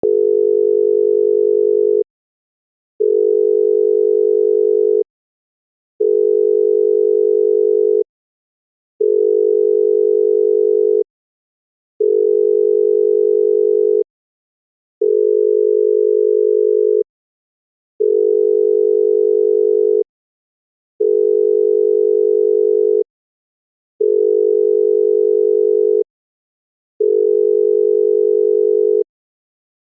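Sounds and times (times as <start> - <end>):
telephone ringback tone: 0.0 - 2.1, 3.0 - 5.1, 6.0 - 8.1, 9.0 - 11.1, 12.0 - 14.1, 15.0 - 17.1, 18.0 - 20.1, 21.0 - 23.1, 24.0 - 26.1, 27.0 - 29.1.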